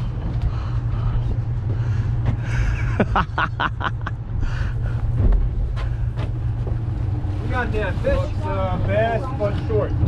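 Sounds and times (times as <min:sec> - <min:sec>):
boat engine drone: 0:00.0 - 0:10.0
people laughing: 0:02.4 - 0:04.2.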